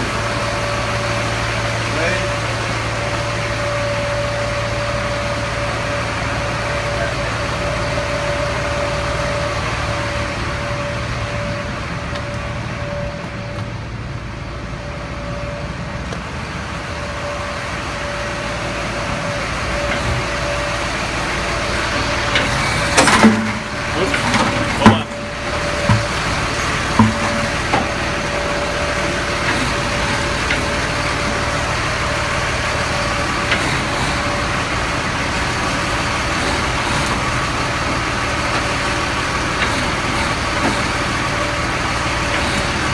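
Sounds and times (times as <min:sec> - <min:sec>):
thin steady whine: 0:00.0 - 0:42.9
truck engine idling: 0:00.0 - 0:42.9
loud metal clanks and knocks: 0:21.9 - 0:28.6.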